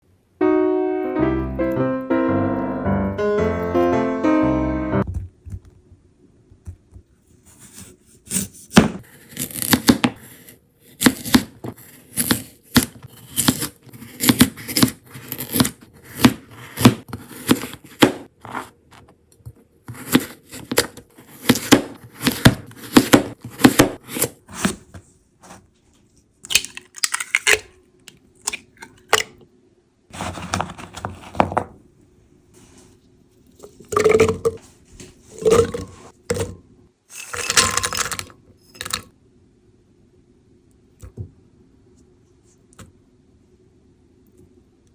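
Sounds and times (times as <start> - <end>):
electric piano jingle: 0.4 - 5.0
carrot being grated: 9.1 - 18.1, 19.9 - 24.4.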